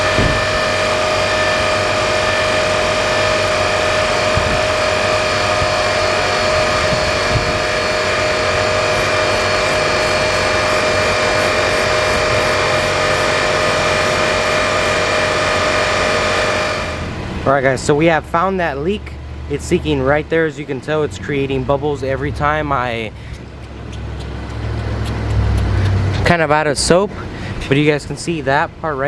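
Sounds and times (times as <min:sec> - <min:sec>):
truck engine idling: 0:00.0 - 0:28.6
quick high ticking: 0:23.2 - 0:26.3.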